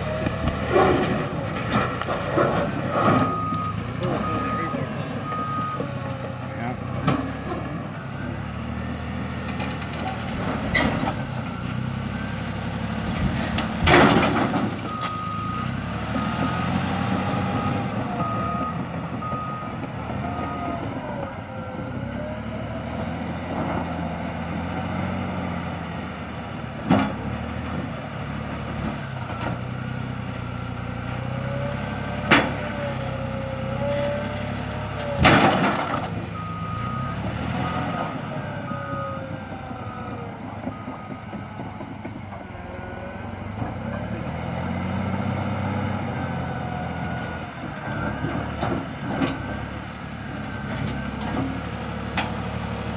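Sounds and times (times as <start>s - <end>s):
bulldozer diesel engine running: 0.0s - 52.9s
reverse alarm beeping: 3.2s - 6.0s.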